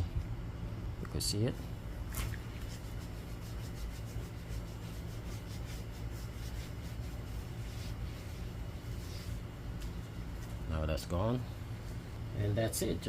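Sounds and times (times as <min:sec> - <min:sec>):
steady low hum: 0:00.0 - 0:13.0
pad rubbing on plastic: 0:02.5 - 0:10.6.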